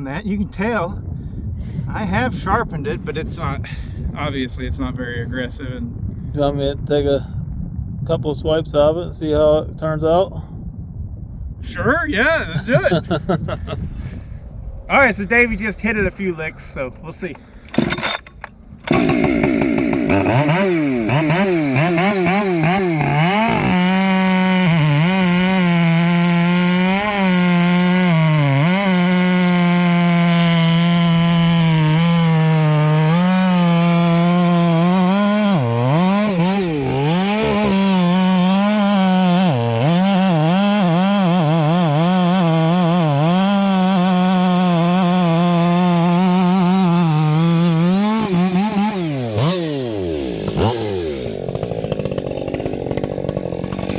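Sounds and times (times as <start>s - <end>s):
chainsaw cutting wood: 17.3s - 53.9s.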